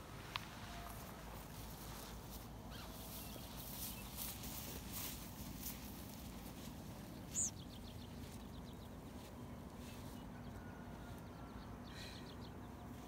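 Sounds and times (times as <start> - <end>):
faint steady hum: 0.0 - 13.0
high bird chirp: 7.2 - 8.8.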